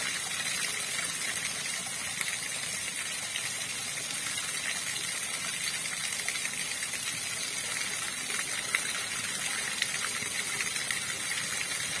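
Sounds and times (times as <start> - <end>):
small splashes and drips: 0.0 - 12.0.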